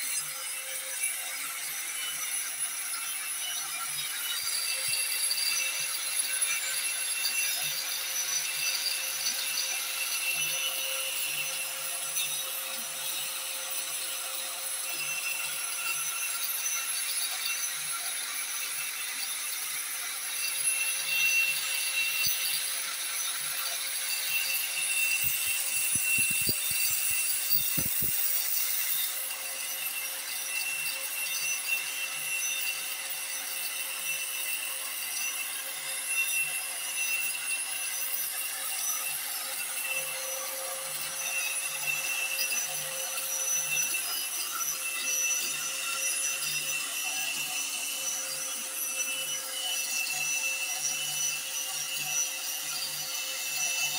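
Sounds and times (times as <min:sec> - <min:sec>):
cutter bit rasping wood: 0:00.0 - 0:53.9
motor whine: 0:24.2 - 0:29.4.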